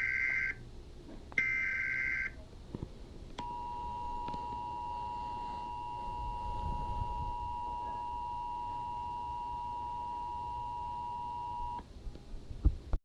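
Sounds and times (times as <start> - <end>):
two-tone alert beep: 3.4 - 11.8.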